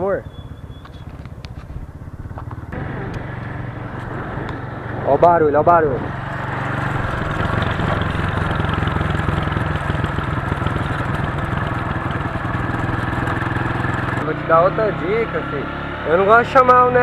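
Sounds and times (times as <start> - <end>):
motorcycle engine running: 0.0 - 17.0
motorcycle chain drive noise: 6.0 - 14.2.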